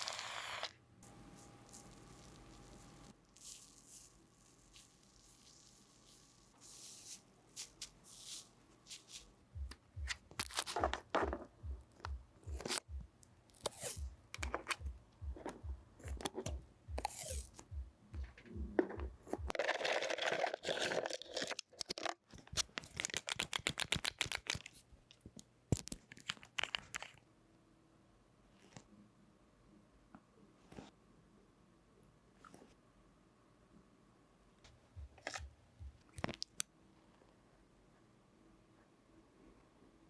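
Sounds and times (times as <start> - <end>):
soft low pulse: 11.4 - 13.2, 14.0 - 19.5
adhesive tape tearing: 13.6 - 14.0, 17.0 - 17.6.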